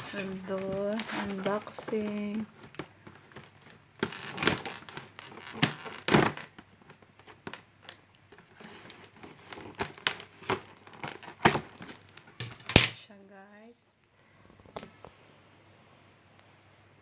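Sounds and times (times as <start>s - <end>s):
wrapping crinkling and tearing: 0.0s - 13.0s.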